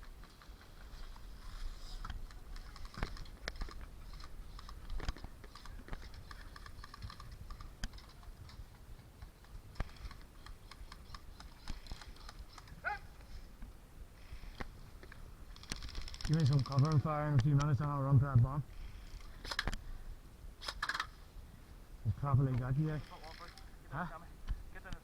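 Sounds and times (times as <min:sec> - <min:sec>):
gear clicks and taps: 0:00.1 - 0:13.7, 0:14.5 - 0:17.9.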